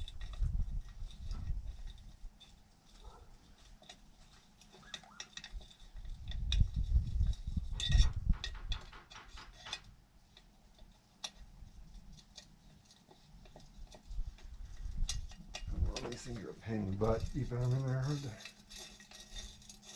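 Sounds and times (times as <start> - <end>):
tools clicking and knocking: 4.6 - 11.4
heavy rumbling knocks: 7.7 - 9.9.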